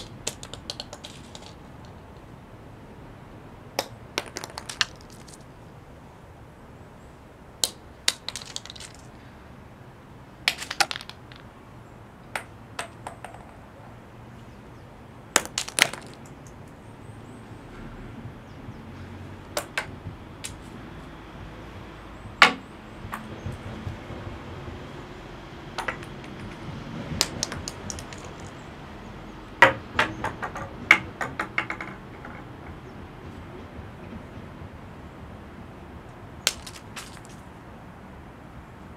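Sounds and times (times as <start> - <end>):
acorns dropping on stone: 0.0 - 2.3, 3.8 - 5.5, 7.6 - 9.2, 10.5 - 11.5, 12.3 - 13.6, 15.3 - 16.8, 25.8 - 26.6, 27.2 - 28.6, 31.2 - 32.4, 36.4 - 37.5.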